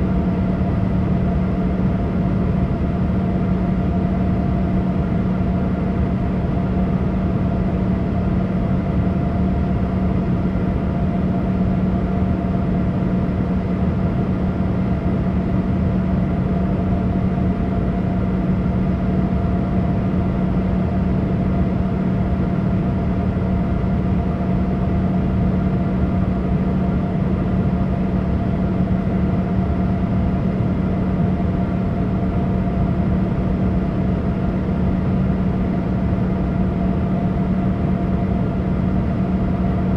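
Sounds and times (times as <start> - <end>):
airliner cabin engine drone: 0.0 - 39.9.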